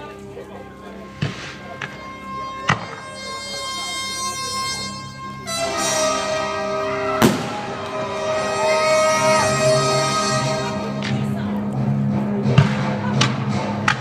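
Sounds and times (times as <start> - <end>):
orchestral music with held chords: 0.0 - 14.0
sharp firework bang: 7.2 - 7.8.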